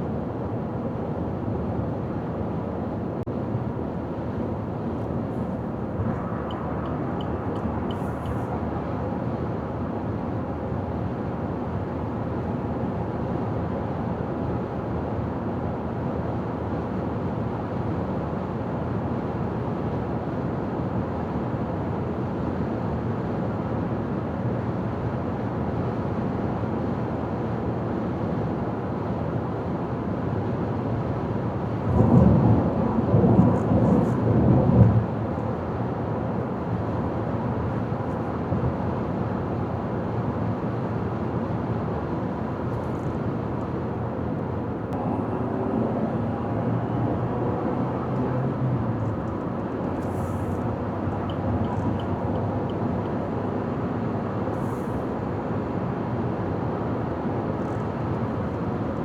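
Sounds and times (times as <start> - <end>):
car road and tyre noise: 0.0 - 59.0.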